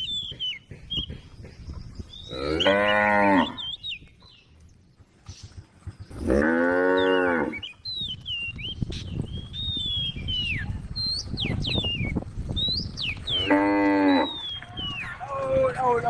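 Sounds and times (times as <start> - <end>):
cow mooing: 2.3 - 3.6, 6.2 - 7.6, 13.4 - 14.4.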